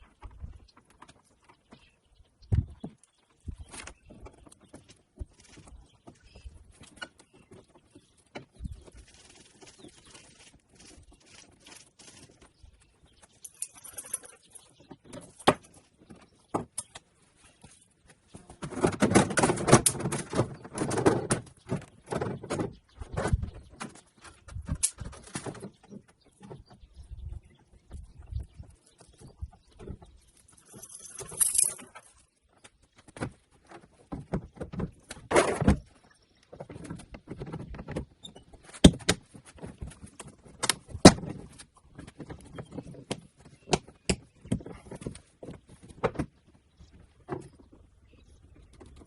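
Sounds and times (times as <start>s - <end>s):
hands handling parts and tools: 30.7s - 32.0s.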